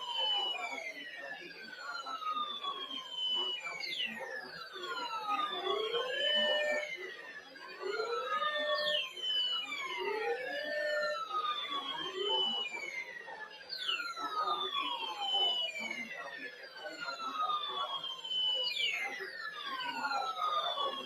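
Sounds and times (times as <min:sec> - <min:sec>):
siren-like sweeping tones: 0:07.6 - 0:13.1.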